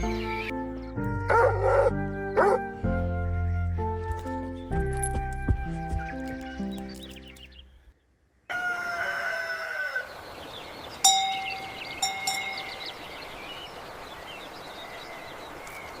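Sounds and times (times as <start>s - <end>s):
cowbells clanging: 11.0s - 13.0s.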